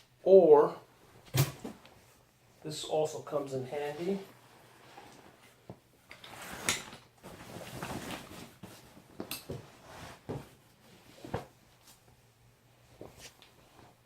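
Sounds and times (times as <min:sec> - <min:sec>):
rustling and scraping: 0:03.8 - 0:12.2, 0:12.8 - 0:14.0.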